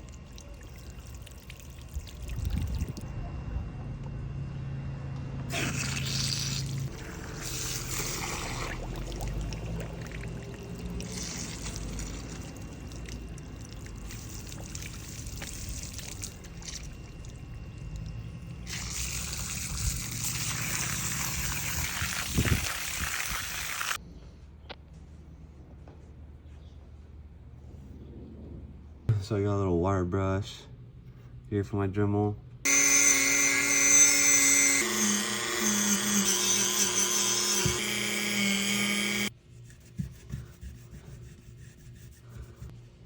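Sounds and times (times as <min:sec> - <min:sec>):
water pouring and trickling: 0:00.0 - 0:03.1, 0:05.6 - 0:24.0.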